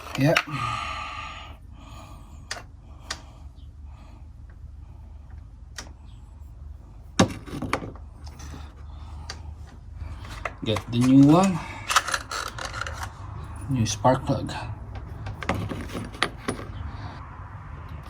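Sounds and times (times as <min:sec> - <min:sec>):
steady low hum: 0:00.0 - 0:18.0
metal clatter: 0:15.2 - 0:16.8.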